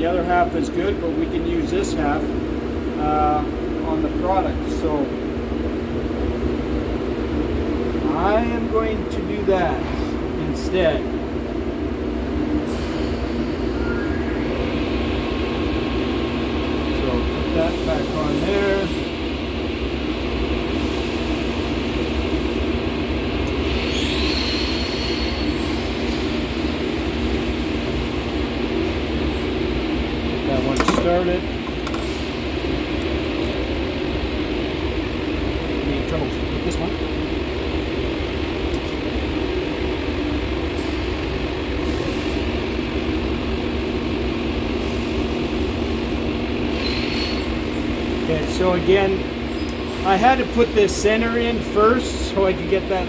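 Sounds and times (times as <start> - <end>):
shop machinery droning: 0.0 - 53.0
steady hum tone: 11.6 - 18.5
high machine whine: 11.9 - 53.0.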